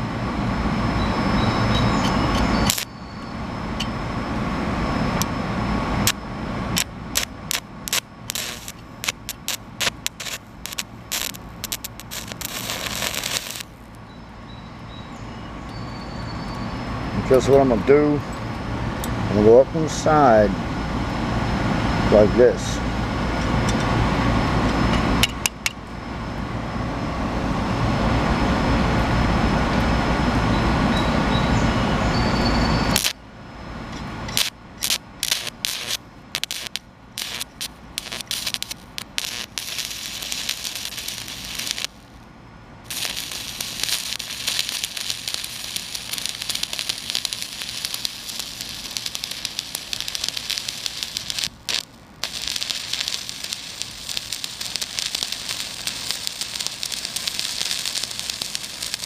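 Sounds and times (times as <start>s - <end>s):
welding arc crackling hiss: 2.6s - 2.9s, 6.8s - 14.0s, 33.0s - 33.2s, 34.3s - 42.2s, 42.9s - 59.0s
loud rumbling noise: 3.6s - 13.9s, 34.2s - 59.0s.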